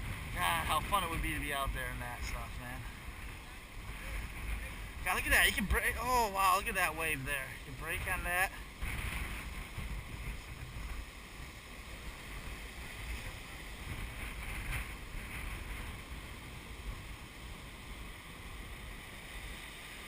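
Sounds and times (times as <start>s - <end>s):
ocean surf breaking: 0.0s - 20.0s
wind on microphone: 0.0s - 20.0s.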